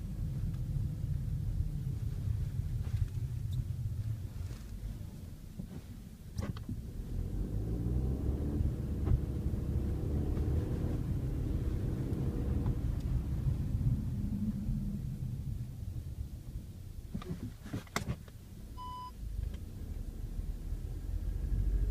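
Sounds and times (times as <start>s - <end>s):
car engine pulling: 1.7s - 16.0s
gear shift knock: 8.9s - 9.4s, 17.1s - 18.4s.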